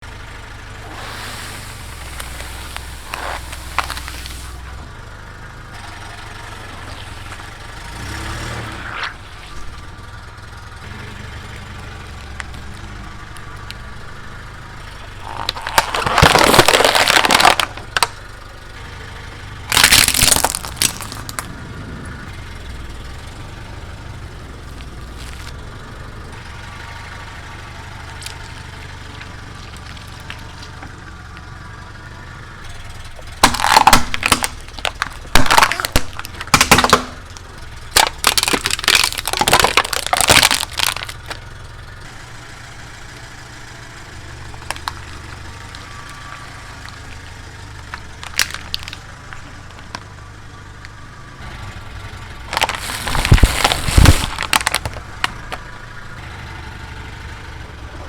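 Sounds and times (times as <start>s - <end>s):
car engine running low: 0.0s - 58.0s
tyres crushing objects: 0.8s - 4.8s, 6.6s - 8.2s, 12.0s - 18.4s, 19.7s - 21.6s, 28.2s - 31.4s, 33.0s - 41.5s, 44.4s - 50.1s, 52.2s - 55.8s.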